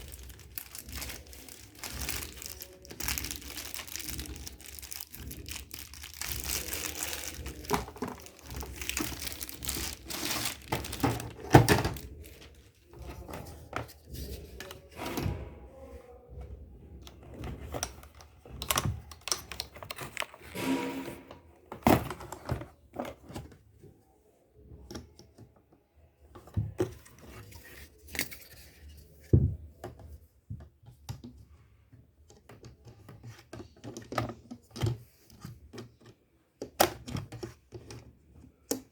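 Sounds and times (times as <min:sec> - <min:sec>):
plastic packaging crinkling: 0:00.0 - 0:13.3
knocks and thunks of handling: 0:00.0 - 0:15.7, 0:29.2 - 0:38.9.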